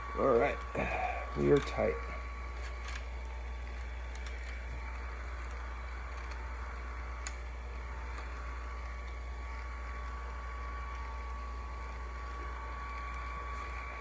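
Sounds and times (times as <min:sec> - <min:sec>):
chain grinder motor humming: 0:00.0 - 0:14.0.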